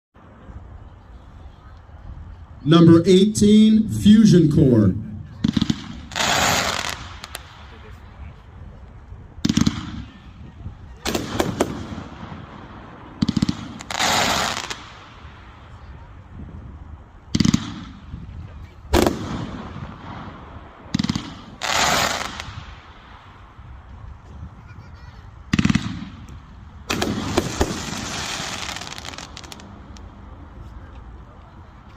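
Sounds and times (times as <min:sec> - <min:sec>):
firework shots: 0:04.9 - 0:08.3, 0:09.3 - 0:16.1, 0:17.2 - 0:24.3, 0:25.3 - 0:30.2
firework crackling: 0:05.3 - 0:24.6, 0:25.2 - 0:30.6.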